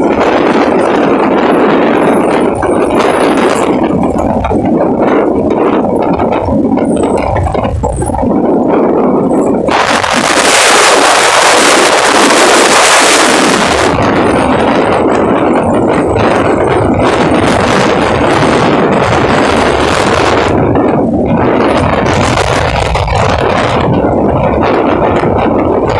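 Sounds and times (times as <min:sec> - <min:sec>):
strong wind on microphone: 0:00.0 - 0:25.9.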